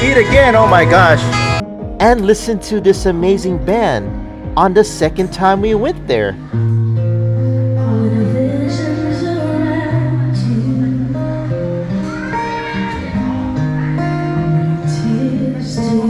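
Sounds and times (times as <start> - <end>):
steady bass line: 0.0 - 7.8
guitar accompaniment: 0.0 - 16.0.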